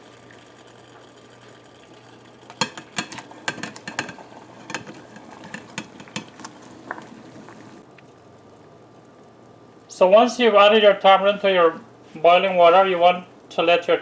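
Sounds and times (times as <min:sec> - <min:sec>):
utensil clinking against pot: 0:02.6 - 0:07.8.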